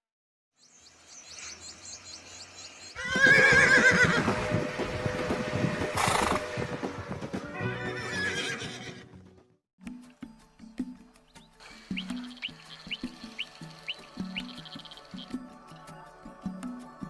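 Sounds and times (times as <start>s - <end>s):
horse whinnying: 3.0s - 4.3s, 7.6s - 9.2s.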